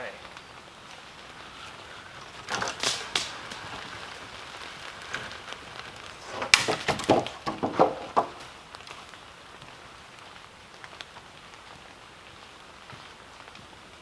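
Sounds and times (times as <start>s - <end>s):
dry wood cracking and snapping: 0.3s - 13.7s.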